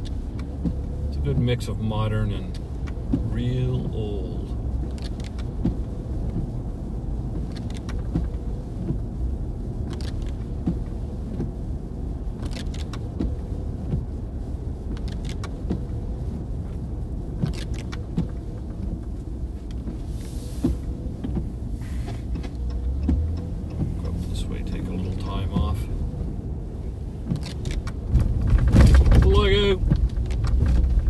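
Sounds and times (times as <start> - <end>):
car engine rumble from inside: 0.0 - 31.0
light clicks and rattles: 7.2 - 11.6, 12.2 - 14.2, 14.8 - 26.1, 27.0 - 31.0
short hiss: 20.1 - 20.9, 21.7 - 22.3.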